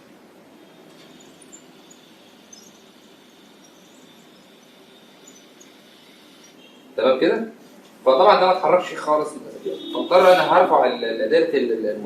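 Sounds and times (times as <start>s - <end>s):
gear motors whining: 0.5s - 7.0s, 9.6s - 11.2s
hiss: 1.0s - 6.7s.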